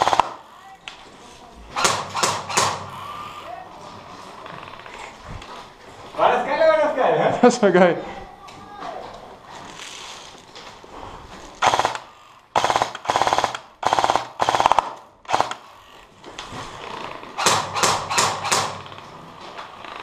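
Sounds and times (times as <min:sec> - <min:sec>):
airsoft guns firing bursts: 0:00.0 - 0:00.5, 0:01.8 - 0:03.2, 0:11.6 - 0:15.8, 0:17.4 - 0:19.0.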